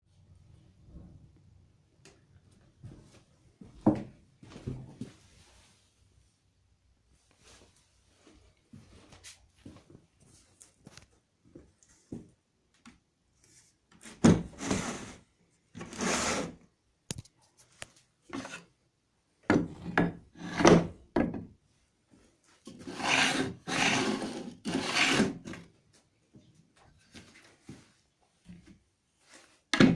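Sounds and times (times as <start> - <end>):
wood scraping and rubbing: 15.8 - 16.5, 22.7 - 25.6.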